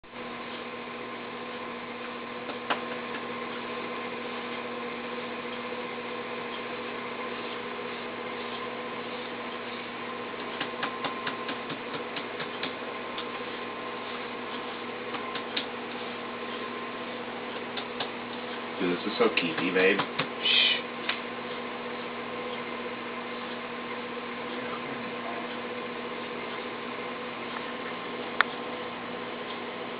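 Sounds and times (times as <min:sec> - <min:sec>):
electrical hum: 0:00.0 - 0:29.9.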